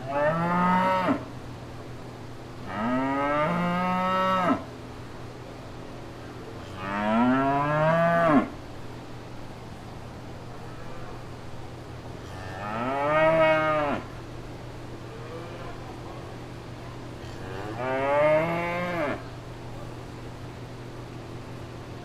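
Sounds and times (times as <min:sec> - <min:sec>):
steady low background noise: 0:00.0 - 0:22.0
cattle mooing: 0:12.2 - 0:14.1, 0:17.3 - 0:19.3.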